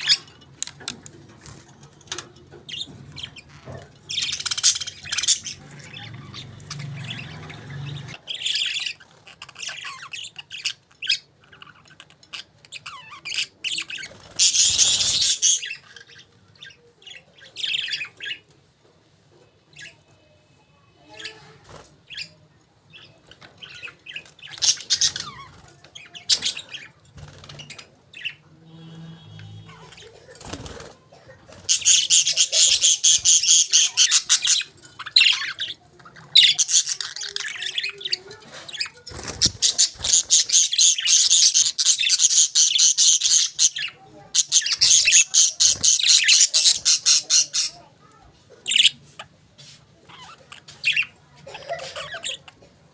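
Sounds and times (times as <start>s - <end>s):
budgerigars chirping: 2.7s - 18.4s, 31.6s - 38.2s, 39.3s - 47.8s.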